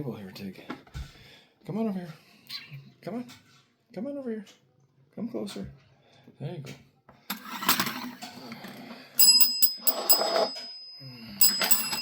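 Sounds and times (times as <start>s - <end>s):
small bell ringing: 9.2s - 12.0s.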